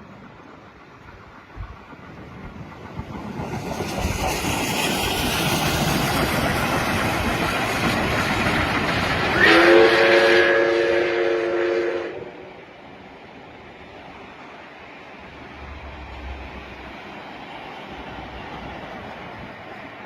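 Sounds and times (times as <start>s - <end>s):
train wheels rumbling on rail: 0.0s - 20.0s.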